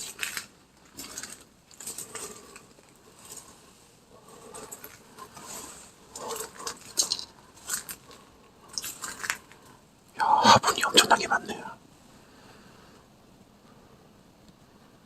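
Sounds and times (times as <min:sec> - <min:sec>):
small crackles and scrapes: 0:00.0 - 0:09.8.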